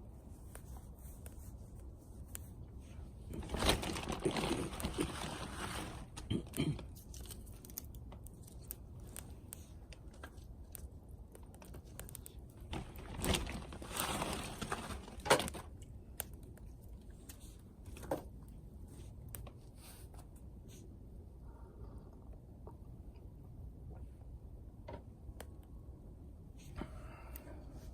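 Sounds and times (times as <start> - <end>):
wood fire crackling: 0.4 - 19.9.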